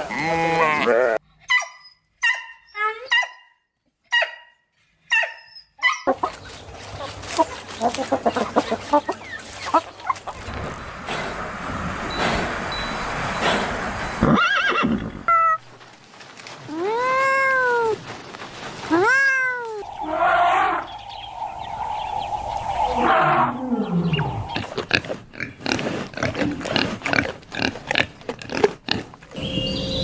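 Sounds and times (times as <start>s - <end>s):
animal calls: 18.9s - 24.7s.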